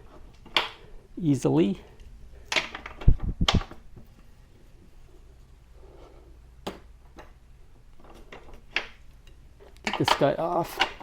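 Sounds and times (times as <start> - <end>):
metal tools clicking and knocking: 8.0 - 11.0.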